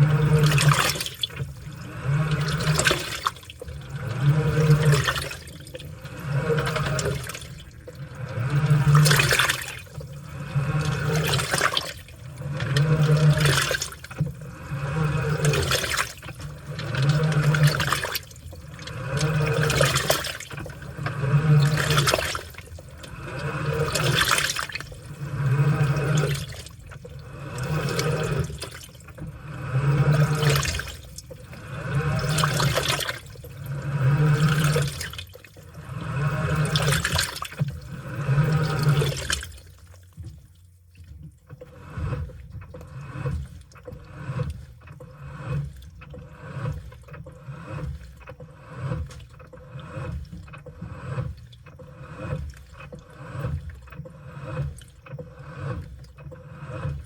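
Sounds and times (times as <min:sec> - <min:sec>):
soft splashes and knocks: 0:00.0 - 0:25.2, 0:25.8 - 0:57.0
washing machine motor hum: 0:00.0 - 0:57.0
water sloshing in washing machine: 0:00.0 - 0:57.0.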